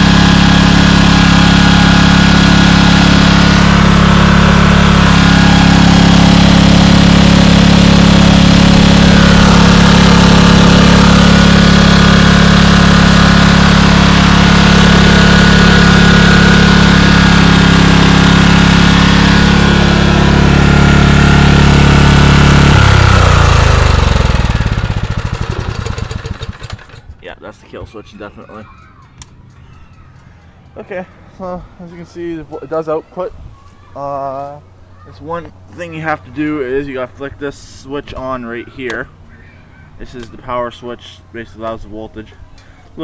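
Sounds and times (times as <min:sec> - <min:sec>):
engine coasting down to stop: 0:00.0 - 0:27.2
generator engine running: 0:00.0 - 0:33.2, 0:33.9 - 0:43.0.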